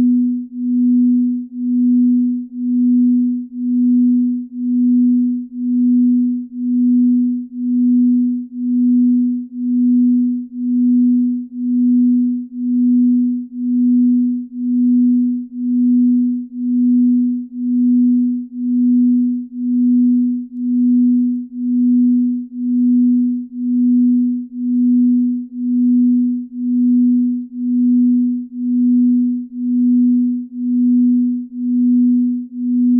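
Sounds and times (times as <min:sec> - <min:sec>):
low pulsing pure tone: 0:00.0 - 0:32.9.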